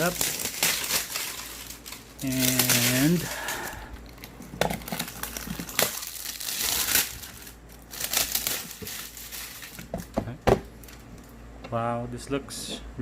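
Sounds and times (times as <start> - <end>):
plastic shrink-wrap crinkling: 0.0 - 10.2.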